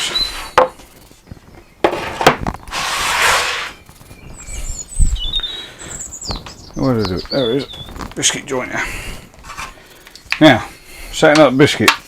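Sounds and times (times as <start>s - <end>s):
rasping slide: 1.9s - 3.9s.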